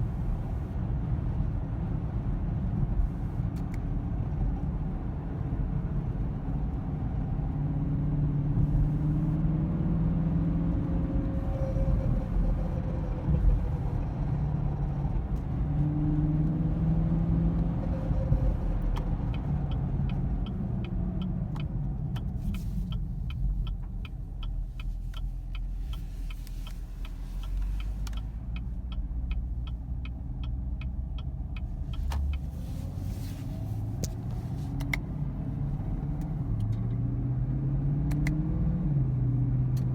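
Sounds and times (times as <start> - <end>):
car engine rumbling: 0.0 - 39.9
regular light ticking: 18.4 - 33.0.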